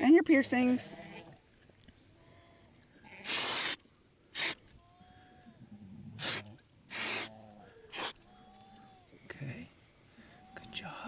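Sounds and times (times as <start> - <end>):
spray paint can hissing: 3.3 - 3.8, 4.4 - 4.6.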